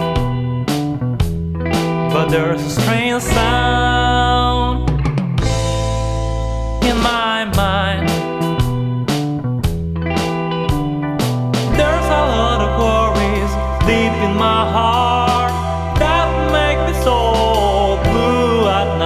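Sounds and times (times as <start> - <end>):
drum kit beat: 0.0 - 3.8, 4.8 - 19.0
lead guitar melody: 0.0 - 7.1, 8.0 - 19.0
bass: 0.0 - 19.0.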